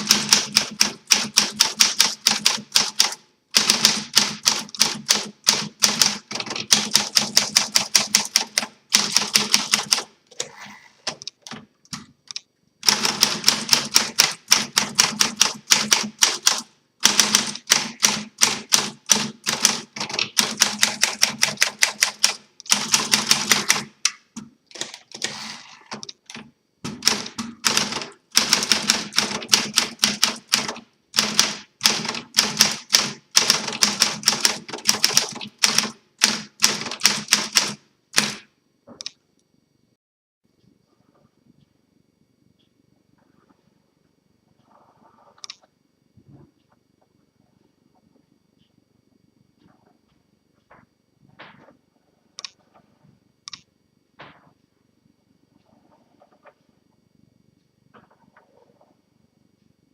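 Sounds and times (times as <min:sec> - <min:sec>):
manual typewriter keystroke clacks: 0:00.0 - 0:10.2, 0:11.0 - 0:39.1.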